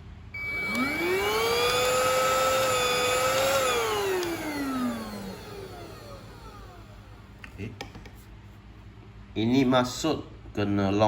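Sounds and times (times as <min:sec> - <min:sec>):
handheld vacuum motor whine: 0:00.4 - 0:07.3.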